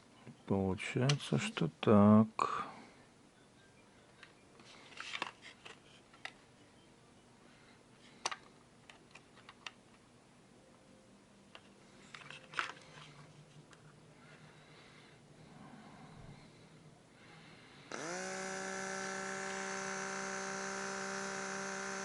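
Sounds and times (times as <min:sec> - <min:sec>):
plastic parts clicking: 0:11.5 - 0:13.1.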